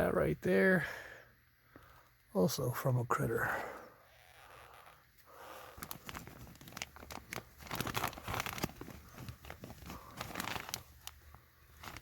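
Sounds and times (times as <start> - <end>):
plastic sheeting crinkling: 4.3 - 12.0.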